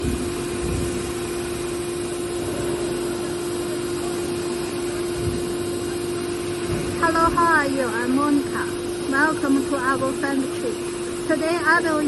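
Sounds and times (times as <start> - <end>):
constant mid-pitched tone: 0.0 - 12.0
factory machinery humming: 0.0 - 12.0.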